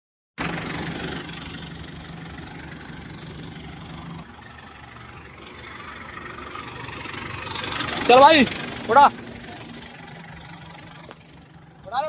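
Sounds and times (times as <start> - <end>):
crane diesel engine running: 0.4 - 12.0.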